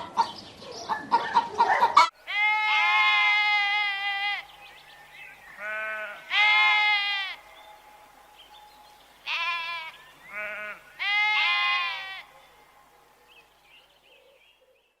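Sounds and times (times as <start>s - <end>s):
livestock bleating: 2.2s - 4.7s, 5.6s - 7.5s, 9.2s - 12.7s.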